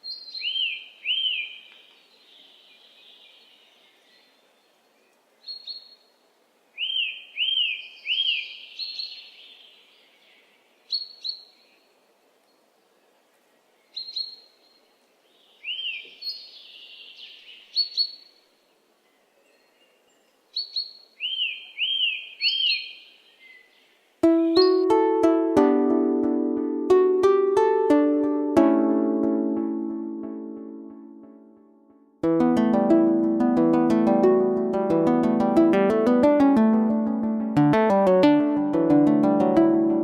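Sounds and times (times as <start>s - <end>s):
songbird whistling and chirping: 0.0s - 4.3s, 5.4s - 6.1s, 6.8s - 10.1s, 10.9s - 11.9s, 13.8s - 18.4s, 19.0s - 24.9s
faint background noise: 0.0s - 24.7s.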